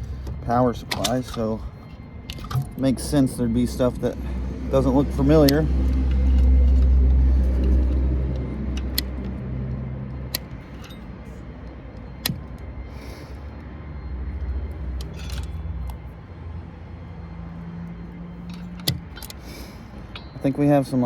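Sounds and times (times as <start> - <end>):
low rumble: 0.0 - 17.3
metallic clicks and clinks: 2.2 - 12.7, 14.4 - 16.1.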